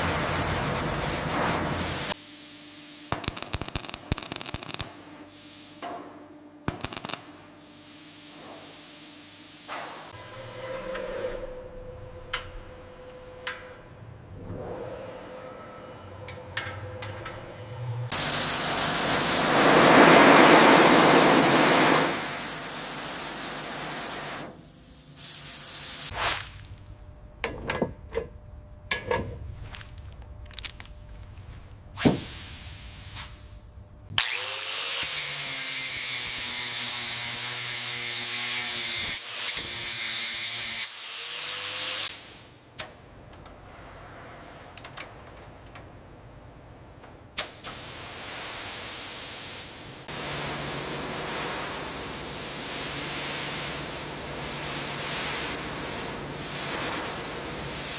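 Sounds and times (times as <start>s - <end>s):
loud spray hiss: 18.2s - 26.2s, 32.0s - 33.3s
faint machine hum: 26.6s - 32.0s.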